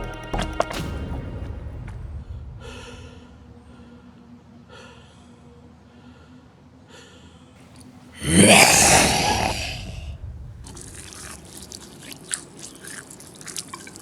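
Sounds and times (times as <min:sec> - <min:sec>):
person breathing heavily: 0:08.2 - 0:11.7.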